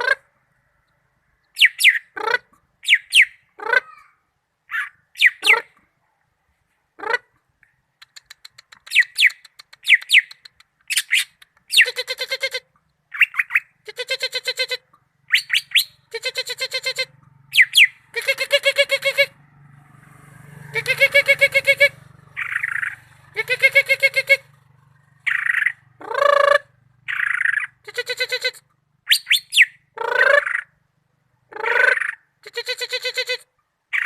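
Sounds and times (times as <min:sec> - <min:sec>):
bird song whistles and trills: 0:01.5 - 0:02.1, 0:02.8 - 0:03.5, 0:04.7 - 0:05.6, 0:08.2 - 0:12.0, 0:13.1 - 0:13.8, 0:15.3 - 0:16.1, 0:17.5 - 0:18.4, 0:22.4 - 0:23.9, 0:25.2 - 0:26.4, 0:27.1 - 0:27.8, 0:29.0 - 0:30.7.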